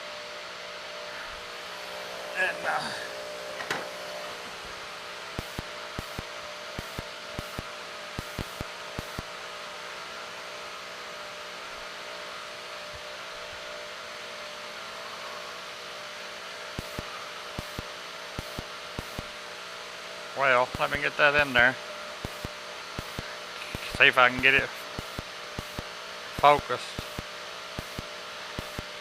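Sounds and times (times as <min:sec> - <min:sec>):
electric motor whirring hum: 0:00.0 - 0:29.0
small sharp clicks: 0:05.4 - 0:09.3.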